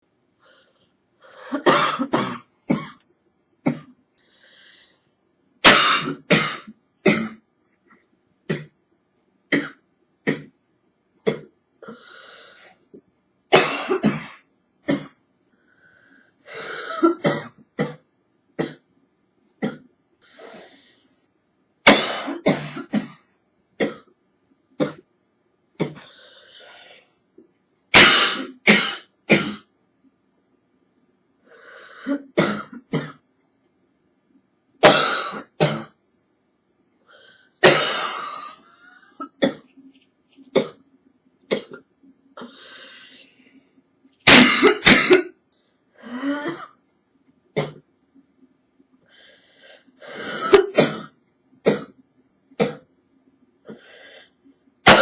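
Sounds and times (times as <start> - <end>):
woman coughing: 1.5 - 3.0, 44.3 - 45.4.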